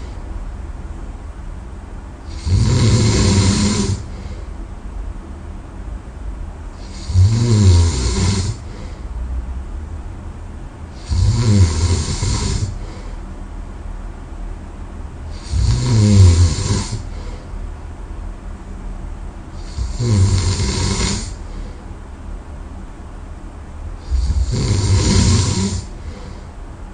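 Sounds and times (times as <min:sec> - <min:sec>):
quiet breathing: 0:00.0 - 0:00.4, 0:02.3 - 0:04.7, 0:07.9 - 0:09.3, 0:12.0 - 0:13.4, 0:16.3 - 0:17.7, 0:19.5 - 0:22.0, 0:24.0 - 0:26.8
person snoring loudly: 0:02.3 - 0:04.3, 0:06.8 - 0:08.9, 0:11.0 - 0:13.0, 0:15.3 - 0:17.3, 0:19.6 - 0:21.5, 0:24.0 - 0:26.4.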